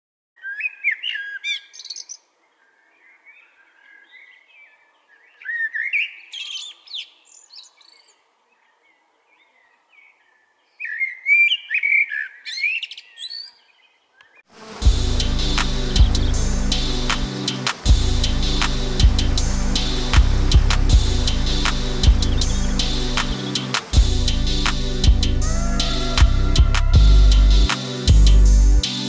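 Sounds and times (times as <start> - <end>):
songbird singing swooping notes: 14.6 - 24.3
faint bird twittering: 14.7 - 24.0.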